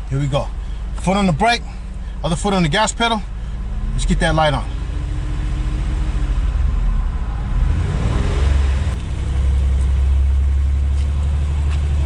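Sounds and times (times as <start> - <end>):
car engine revving under load: 3.3 - 12.0.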